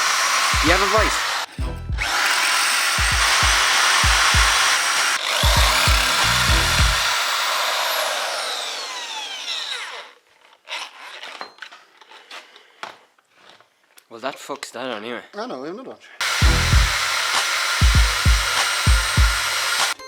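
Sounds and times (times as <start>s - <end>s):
rotary tool grinding metal: 0.0s - 12.6s, 16.2s - 20.0s.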